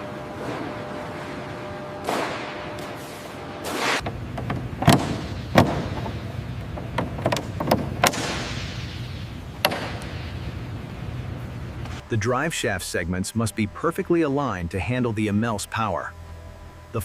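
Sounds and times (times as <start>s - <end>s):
sharp knocks and clanks: 4.0s - 8.8s, 9.6s - 10.3s.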